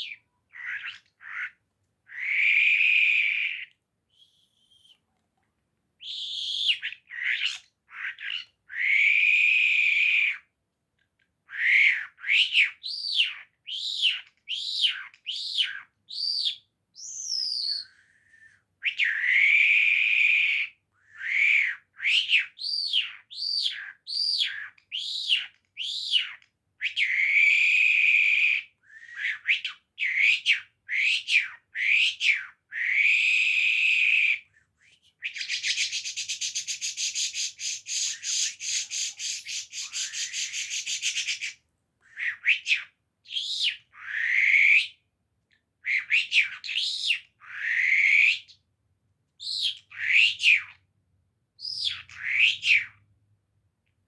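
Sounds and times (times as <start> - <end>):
songbird chirping: 0.0 - 18.1, 21.4 - 28.8, 29.4 - 45.0, 51.6 - 53.1.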